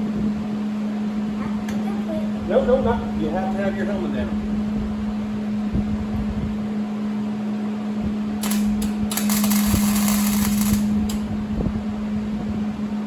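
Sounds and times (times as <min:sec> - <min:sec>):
welding arc crackling: 0:08.4 - 0:11.4
welding machine humming: 0:08.4 - 0:11.6.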